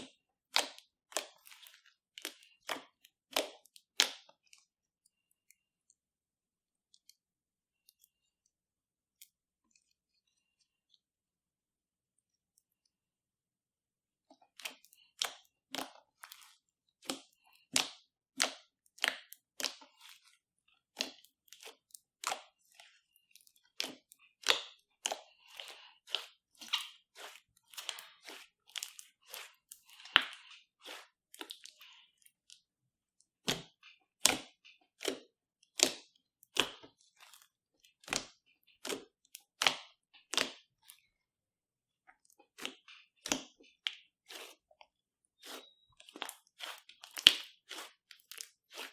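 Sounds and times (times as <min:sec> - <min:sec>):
slime squished by hand: 0:45.4 - 0:48.9.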